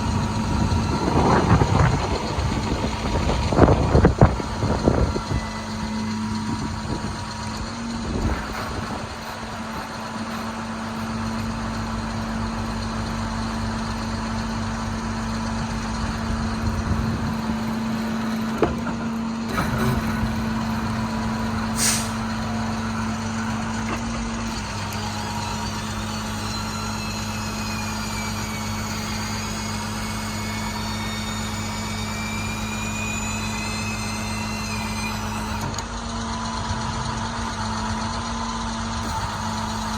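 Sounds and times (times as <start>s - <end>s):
diesel engine idling: 0.0s - 39.9s
air hiss: 21.7s - 22.2s.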